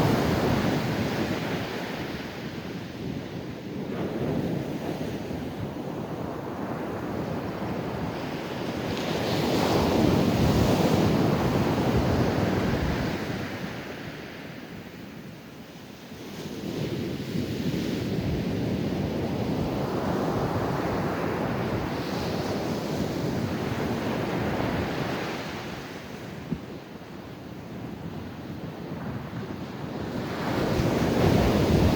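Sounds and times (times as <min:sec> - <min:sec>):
ocean surf breaking on beach: 0:16.5 - 0:31.9.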